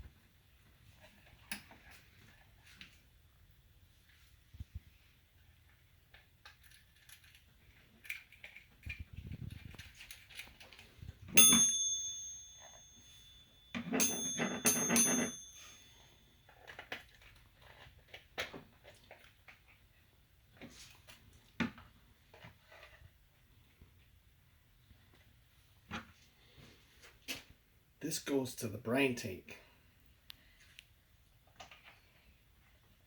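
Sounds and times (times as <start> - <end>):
metal object clinking and ringing: 11.4 - 16.2.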